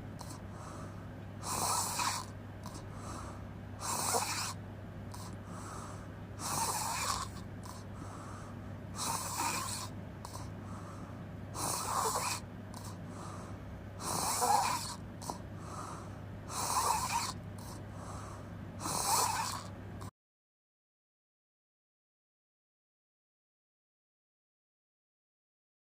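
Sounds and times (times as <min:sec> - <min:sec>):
soft breaths: 0:00.0 - 0:19.8
person snoring: 0:00.2 - 0:19.7.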